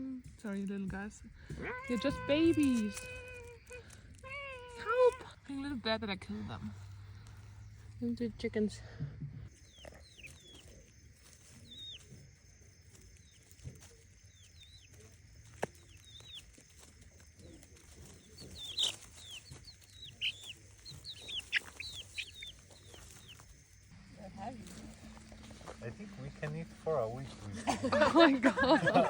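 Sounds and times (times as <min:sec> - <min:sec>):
chickens chirping and clucking: 0:09.0 - 0:28.3.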